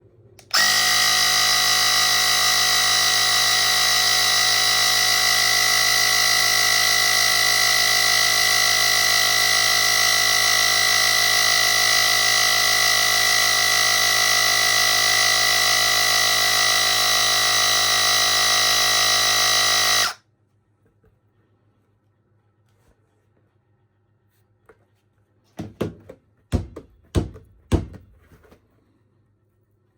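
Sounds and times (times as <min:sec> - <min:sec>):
electric air pump whining: 0:00.4 - 0:20.2.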